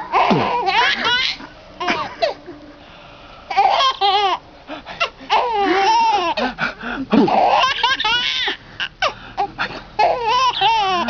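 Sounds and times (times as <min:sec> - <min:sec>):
baby laughing: 0:00.0 - 0:02.5, 0:03.5 - 0:04.4, 0:05.0 - 0:08.9, 0:10.0 - 0:11.0.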